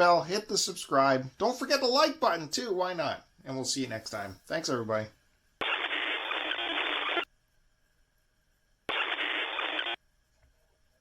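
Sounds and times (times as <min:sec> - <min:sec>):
static-like hiss bursts: 0:05.6 - 0:07.3, 0:08.9 - 0:10.0.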